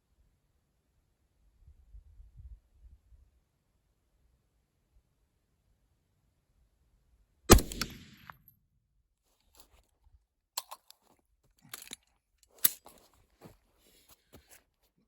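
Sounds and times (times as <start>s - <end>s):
rifle shot: 7.5s - 8.4s.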